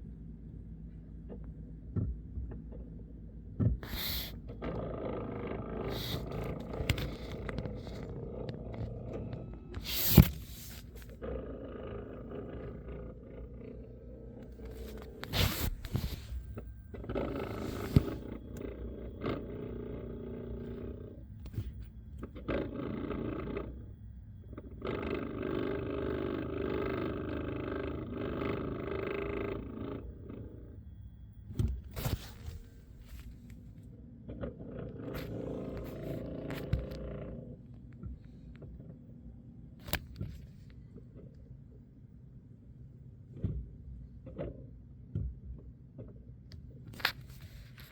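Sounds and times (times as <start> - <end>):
brakes groaning: 3.7 - 38.4.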